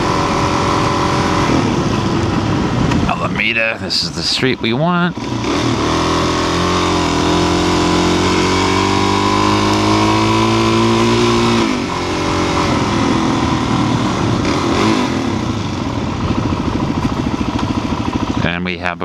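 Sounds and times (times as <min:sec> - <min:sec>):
motorcycle engine pulling: 0:00.0 - 0:18.7
wind rush over microphone: 0:01.2 - 0:04.2.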